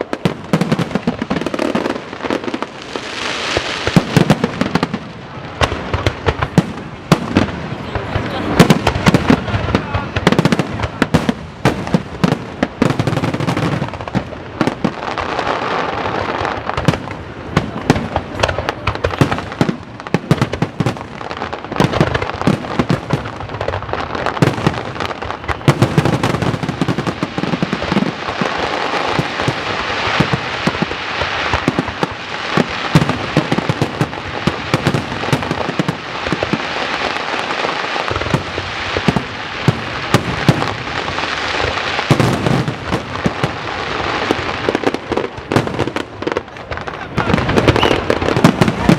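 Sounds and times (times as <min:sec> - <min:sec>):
firework crackling: 0:00.0 - 0:48.9
sharp firework bangs: 0:00.0 - 0:48.9
firework shell bursts: 0:47.7 - 0:48.1.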